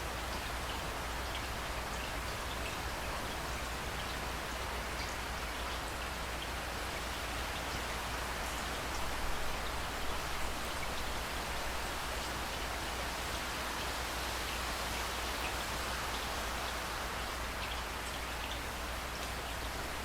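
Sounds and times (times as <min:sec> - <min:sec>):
rain falling: 0:00.0 - 0:20.0.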